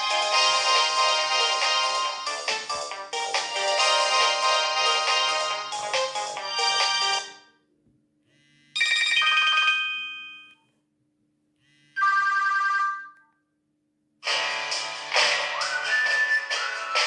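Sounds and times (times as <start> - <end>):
phone ringtone melody: 0.0 - 7.4, 8.8 - 10.6, 12.0 - 13.2.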